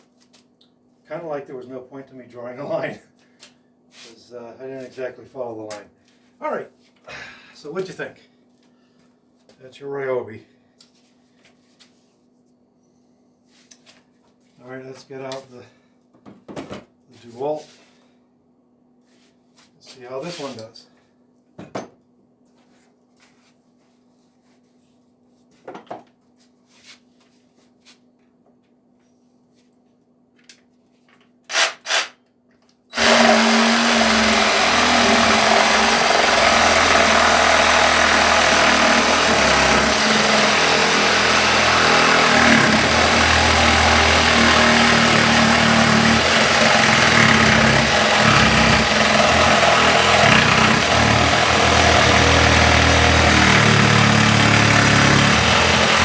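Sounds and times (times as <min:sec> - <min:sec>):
reciprocating saw cutting plywood: 0:33.0 - 0:56.0.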